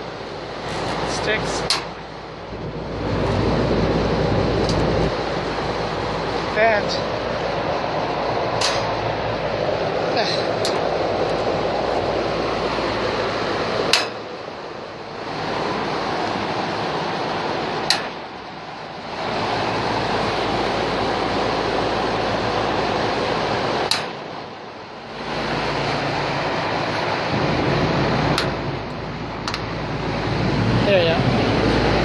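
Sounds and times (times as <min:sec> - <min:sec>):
steady rushing noise: 0:00.0 - 0:32.0
sharp click: 0:08.6 - 0:08.9, 0:13.9 - 0:14.2, 0:17.9 - 0:18.2, 0:23.9 - 0:24.2.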